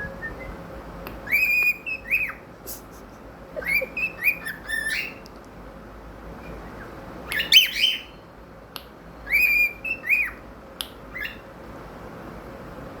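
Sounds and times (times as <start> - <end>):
cockatiel whistling: 0.0 - 0.6, 1.2 - 2.4, 3.6 - 5.2, 6.6 - 8.2, 9.3 - 10.4
bird chirps: 1.2 - 2.4, 3.6 - 5.2, 6.4 - 8.2, 11.1 - 11.5.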